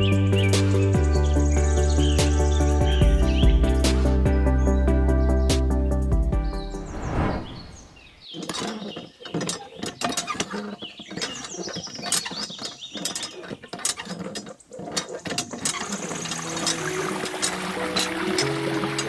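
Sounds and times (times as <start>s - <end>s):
short squeaks: 8.2s - 18.5s
mechanical clicking and clatter: 8.4s - 19.0s.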